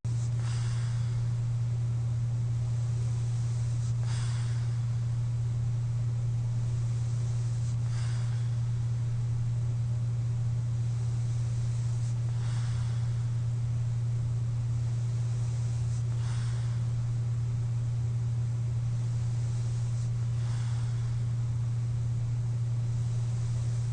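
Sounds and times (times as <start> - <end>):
steady low hum: 0.0 - 23.9
airy breathing through mask: 0.1 - 1.5, 2.6 - 5.2, 6.7 - 9.1, 10.9 - 13.9, 14.7 - 17.6, 18.8 - 22.0.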